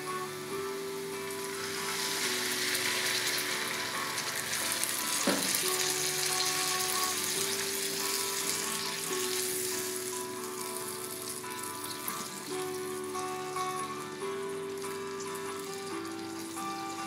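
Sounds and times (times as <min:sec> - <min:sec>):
food sizzling in oil: 0:00.0 - 0:17.0
soft background music: 0:00.0 - 0:17.0
single knock: 0:05.3 - 0:05.6.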